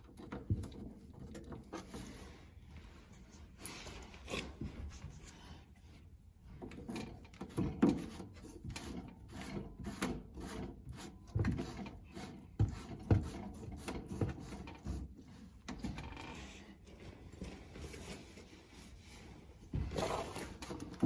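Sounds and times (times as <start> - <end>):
plumbing parts knocking and rubbing: 6.5 - 18.0.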